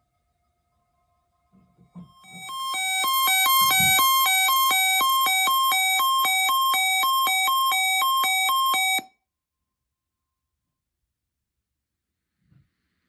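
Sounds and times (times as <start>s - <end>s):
two-tone electronic alarm beeping: 2.2s - 9.1s.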